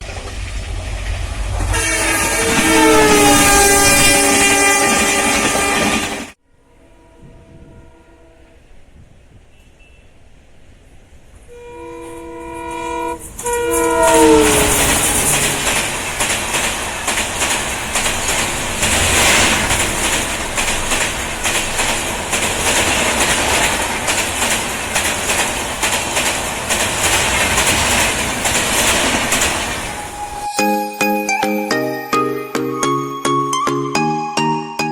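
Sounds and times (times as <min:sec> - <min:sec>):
wheels clattering over rail joints: 0:00.0 - 0:06.1, 0:13.2 - 0:30.5
train coaches rushing by: 0:00.0 - 0:06.4, 0:08.6 - 0:32.6
locomotive horn blasts: 0:01.7 - 0:08.7, 0:11.5 - 0:15.9.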